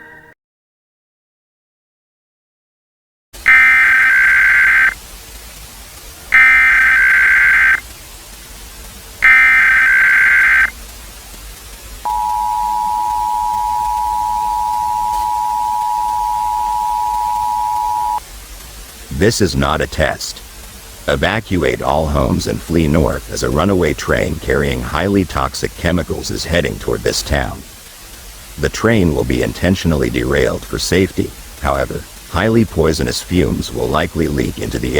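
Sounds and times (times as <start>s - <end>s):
digital data bursts: 3.4s - 5.0s, 6.3s - 7.9s, 9.2s - 10.8s, 12.0s - 18.2s
two-tone attention signal: 3.4s - 5.0s, 6.3s - 7.8s, 9.2s - 10.7s, 12.1s - 18.2s.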